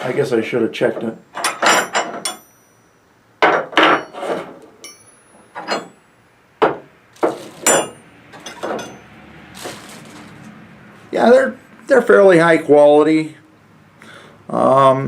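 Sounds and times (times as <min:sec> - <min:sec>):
metal wrenches clinking together: 0:01.4 - 0:02.8, 0:03.4 - 0:06.0, 0:06.6 - 0:09.1.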